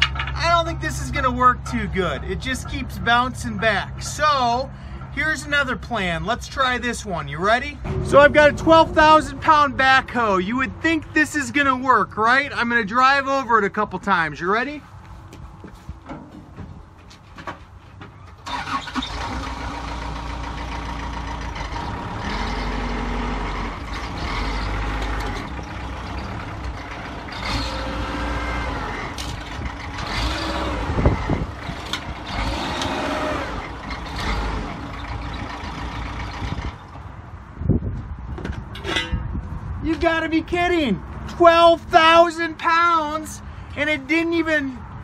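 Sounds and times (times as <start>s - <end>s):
diesel engine revving: 0.0s - 11.3s, 18.4s - 37.3s.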